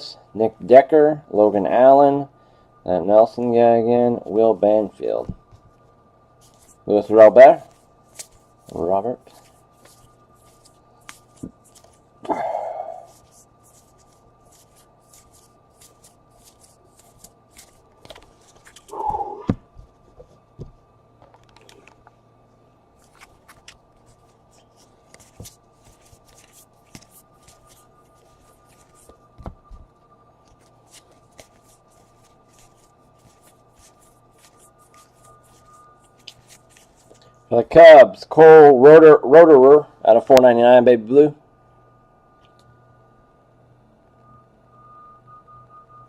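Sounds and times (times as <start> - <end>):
cards flipping and sliding: 6.4 - 6.8, 7.7 - 12.1, 13.1 - 19.5, 23.0 - 29.8, 30.4 - 37.2.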